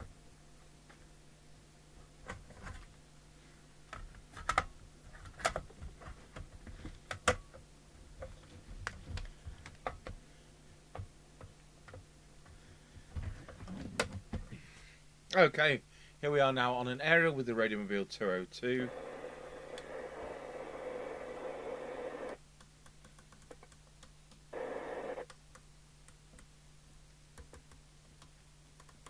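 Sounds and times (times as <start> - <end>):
faint steady hum: 0.0 - 29.0
radio being handled clicks: 18.9 - 22.4, 24.3 - 25.4.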